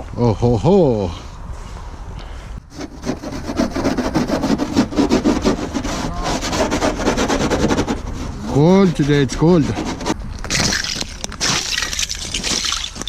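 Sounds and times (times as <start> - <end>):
rough scraping and rubbing: 2.7 - 13.0.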